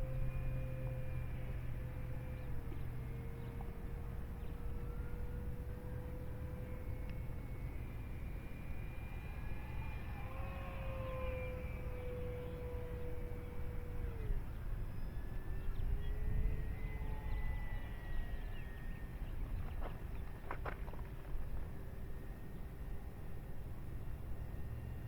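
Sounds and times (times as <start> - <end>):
model plane motor whine: 0.0 - 25.0.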